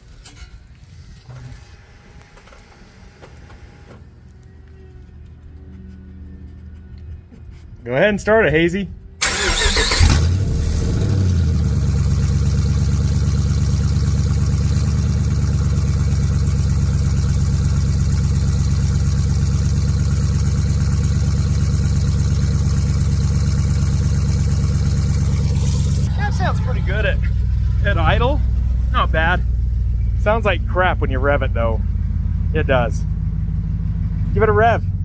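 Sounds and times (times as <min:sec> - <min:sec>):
truck engine idling: 0:09.2 - 0:35.0.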